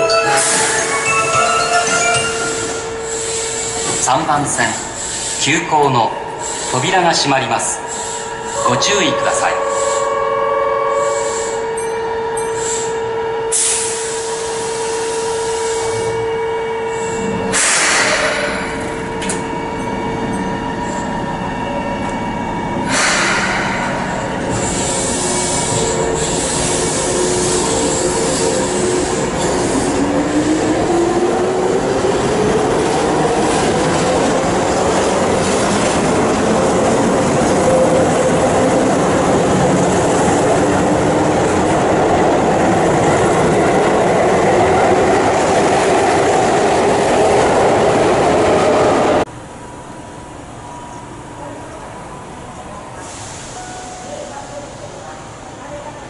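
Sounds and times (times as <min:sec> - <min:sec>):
train wheels rumbling on rails: 0:17.0 - 0:49.3.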